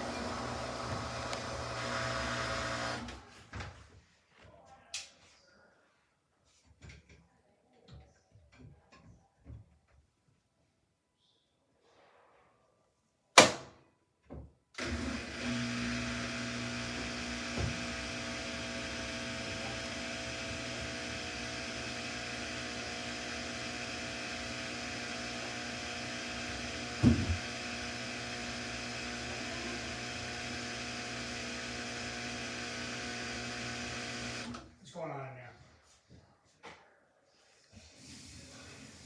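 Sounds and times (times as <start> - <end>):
washing machine humming: 0.0 - 3.3, 14.8 - 34.6
washing machine knocks: 27.0 - 27.4.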